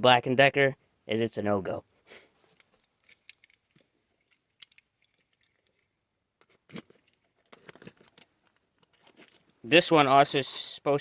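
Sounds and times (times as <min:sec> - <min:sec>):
cardboard box rustling: 0:06.4 - 0:09.6.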